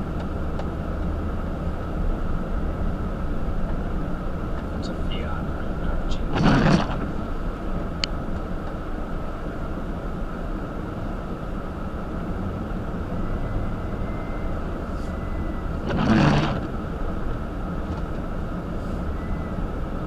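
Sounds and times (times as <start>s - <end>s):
car engine and road rumble: 0.0s - 20.0s
rush of noise: 4.8s - 7.6s, 15.6s - 16.9s.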